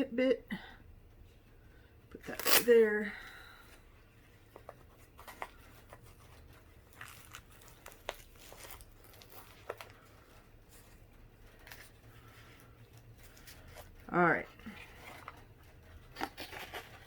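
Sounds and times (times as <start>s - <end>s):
packaging crinkling and tearing: 4.6s - 12.2s, 14.8s - 17.0s.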